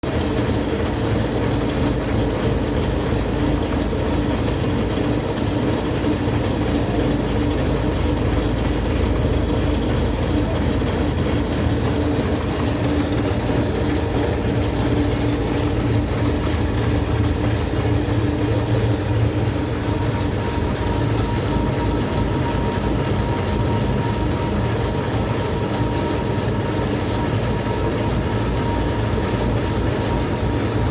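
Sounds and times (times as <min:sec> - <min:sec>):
lathe running and cutting: 0:00.1 - 0:30.9.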